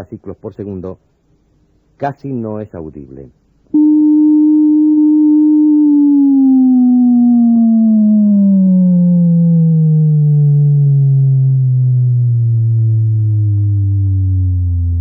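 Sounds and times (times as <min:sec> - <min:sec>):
electronic test tone gliding lower: 0:03.7 - 0:15.0.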